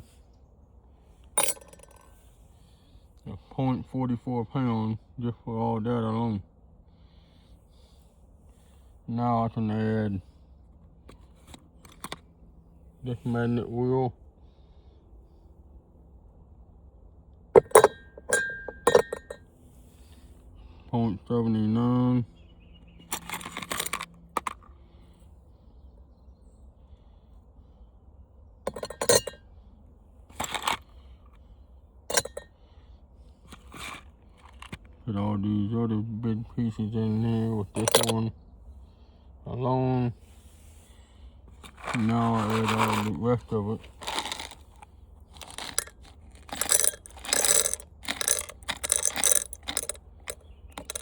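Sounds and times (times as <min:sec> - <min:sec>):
scrap parts clattering into container: 0:23.1 - 0:24.5, 0:41.6 - 0:43.1, 0:43.8 - 0:44.8, 0:45.4 - 0:51.0.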